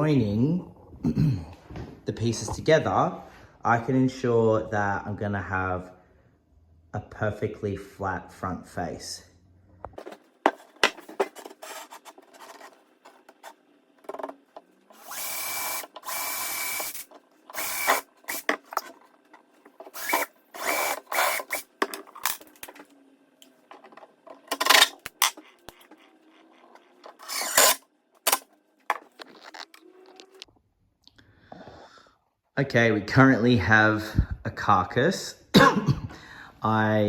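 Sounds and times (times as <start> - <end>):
power drill driving screws: 14.9 - 18.6, 19.9 - 21.7, 27.1 - 27.8.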